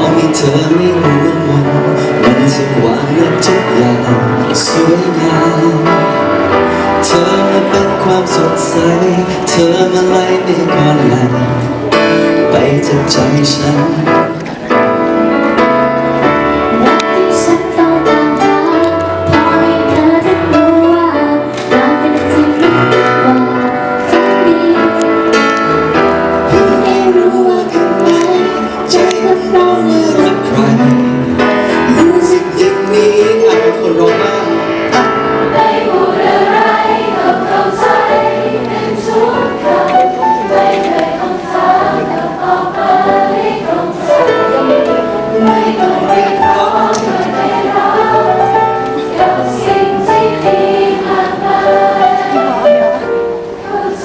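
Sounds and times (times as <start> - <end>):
live band playing pop ballad: 0.0 - 35.8.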